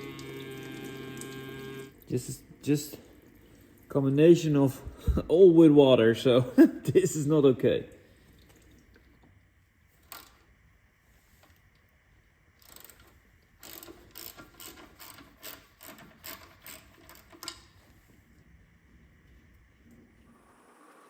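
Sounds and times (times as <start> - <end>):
ratchet wrench clicking: 12.6 - 17.6.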